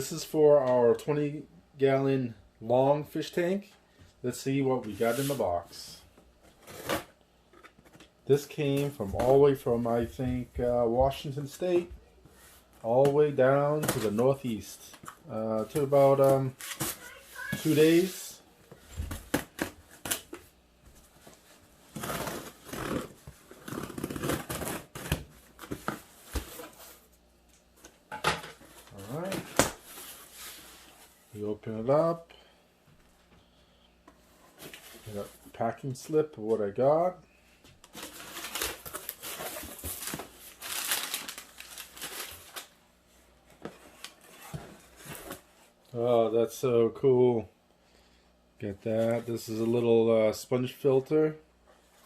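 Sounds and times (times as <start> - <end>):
packing material crinkling: 37.9 - 42.7.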